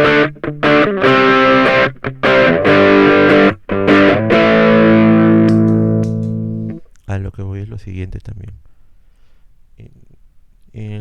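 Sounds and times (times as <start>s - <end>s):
distorted electric guitar chords: 0.0s - 6.8s.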